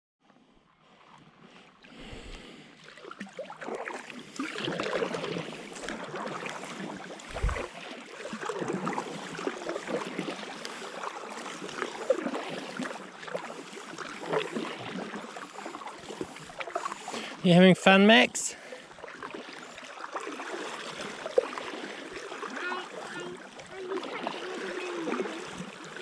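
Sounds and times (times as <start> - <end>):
paddle splashing water: 0.4 - 26.0
low thump: 7.3 - 7.7.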